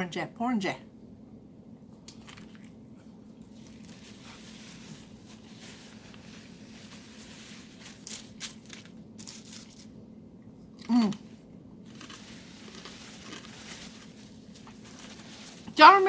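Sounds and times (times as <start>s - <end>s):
person chewing: 1.9s - 4.5s, 10.7s - 13.6s.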